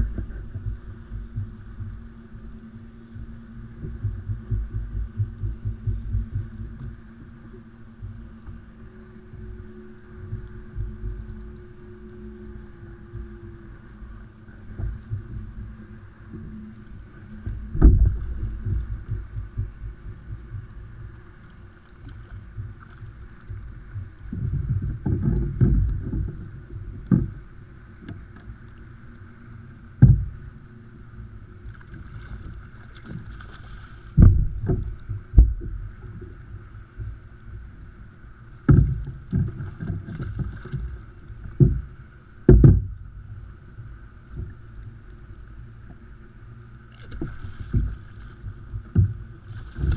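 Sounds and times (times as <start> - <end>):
water sloshing along hull: 0.0 - 49.9
knocks against kayak hull: 17.5 - 20.7, 30.0 - 30.4, 34.2 - 35.8, 38.6 - 40.8, 42.5 - 43.0.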